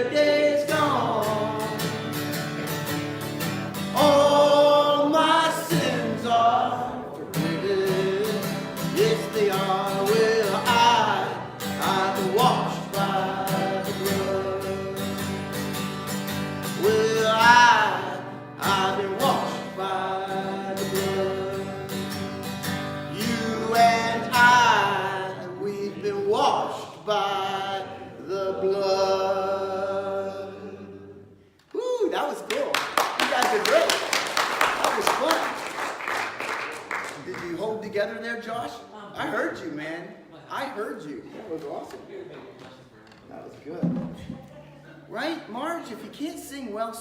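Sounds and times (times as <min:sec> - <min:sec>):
people singing a worship song: 0:00.0 - 0:02.2, 0:04.0 - 0:15.6, 0:16.6 - 0:22.2, 0:23.0 - 0:31.4
strummed acoustic guitar: 0:00.0 - 0:30.8.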